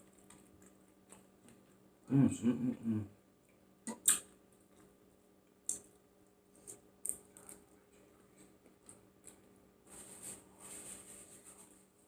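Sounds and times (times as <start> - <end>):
wet chewing clicks and smacks: 0.0 - 1.9, 3.4 - 9.6.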